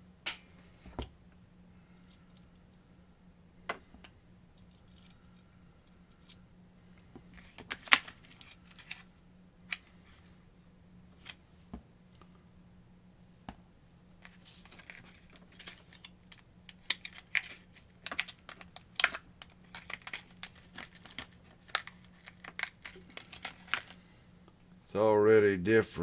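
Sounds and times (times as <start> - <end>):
faint steady hum: 0.0 - 26.0
clicks of small tool parts handled: 14.2 - 24.0.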